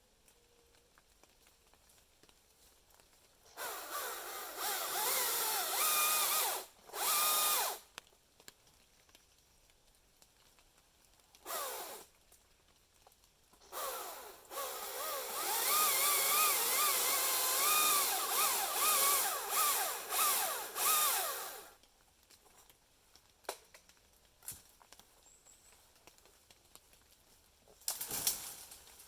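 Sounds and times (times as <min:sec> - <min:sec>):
power tool motor: 0:03.6 - 0:07.8, 0:11.5 - 0:12.0, 0:13.7 - 0:21.8.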